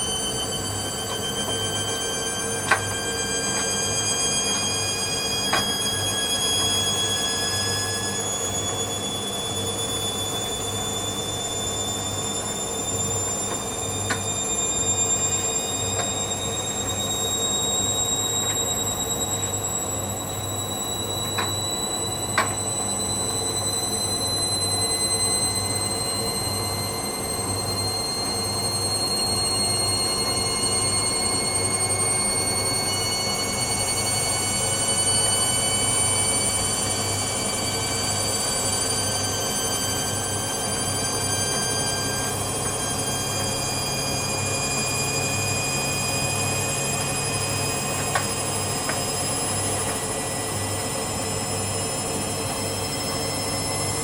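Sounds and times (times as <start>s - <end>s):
high-pitched rising whine: 0.0s - 54.0s
washing machine motor hum: 0.0s - 54.0s.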